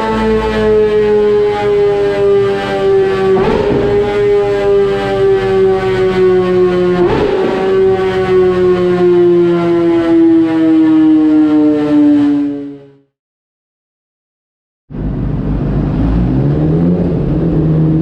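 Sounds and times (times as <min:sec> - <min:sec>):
motorcycle engine at high revs: 0:01.8 - 0:09.0, 0:15.4 - 0:18.0.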